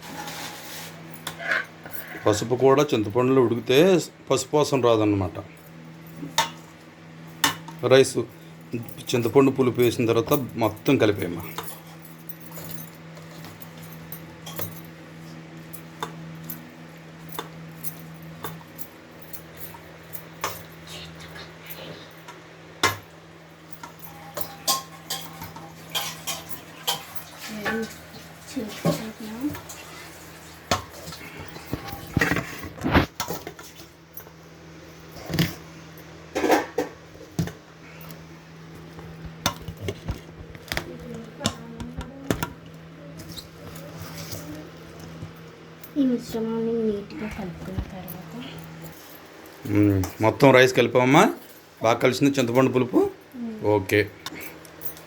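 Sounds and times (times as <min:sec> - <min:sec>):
ladle clinking and scraping pot: 0:00.0 - 0:02.0, 0:23.8 - 0:33.9.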